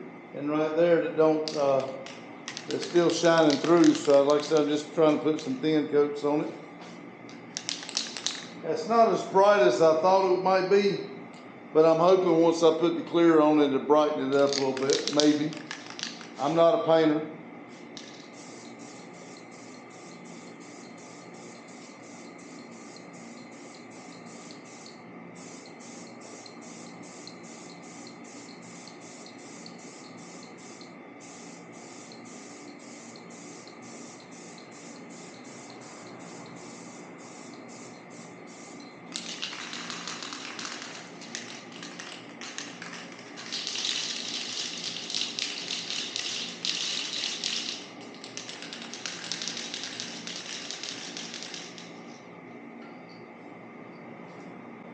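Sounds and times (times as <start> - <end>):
spray can hissing: 2.5 - 4.8, 7.6 - 8.5, 14.6 - 16.5, 17.7 - 51.9.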